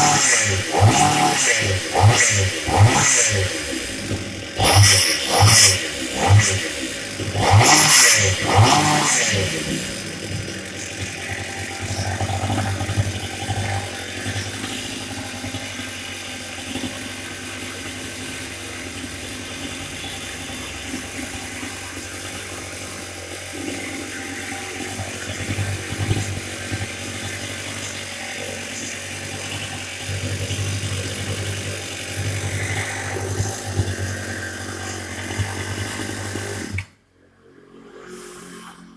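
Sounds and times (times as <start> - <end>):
chainsaw engine running: 0.0 - 36.9.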